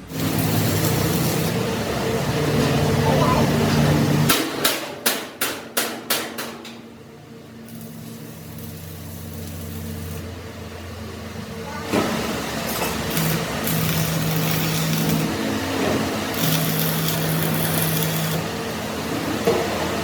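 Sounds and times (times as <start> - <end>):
machine humming: 0.1 - 4.4.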